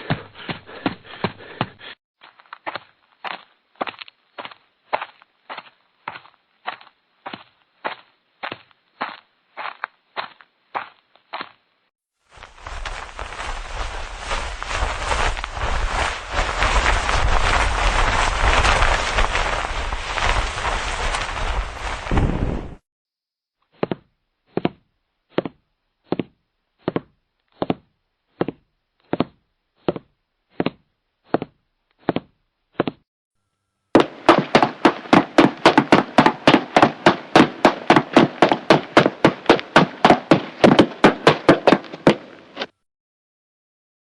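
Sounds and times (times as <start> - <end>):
footsteps: 0.1 - 11.6, 12.3 - 22.8, 34.0 - 42.8.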